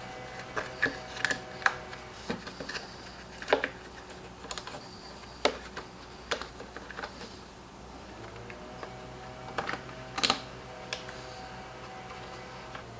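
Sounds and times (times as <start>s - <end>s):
faint steady hum: 0.0s - 12.9s
small parts clicking and tapping: 0.3s - 7.3s, 9.5s - 11.2s.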